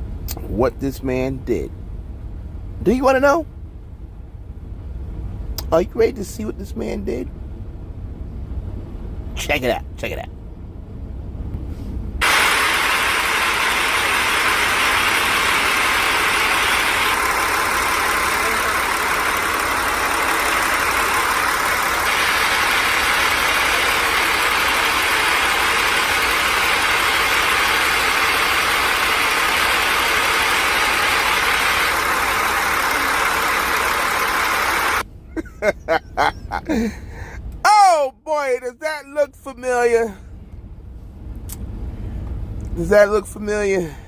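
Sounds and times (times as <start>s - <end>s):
truck engine running: 10.3s - 37.6s.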